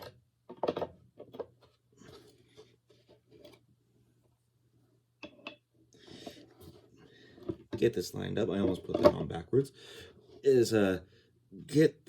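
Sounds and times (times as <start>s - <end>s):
soft scrapes and rustling: 1.6s - 3.7s, 6.0s - 7.9s.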